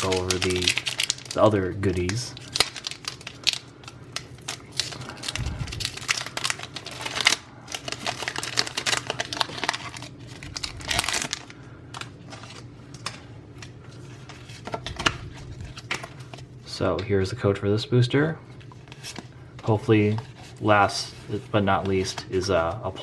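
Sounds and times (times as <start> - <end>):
foil wrapper tearing and crinkling: 0.0 - 12.6.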